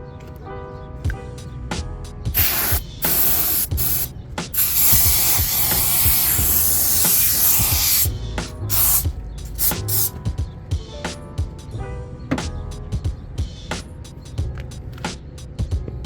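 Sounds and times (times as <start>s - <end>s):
aerosol can spraying: 2.4s - 8.1s, 8.7s - 10.2s.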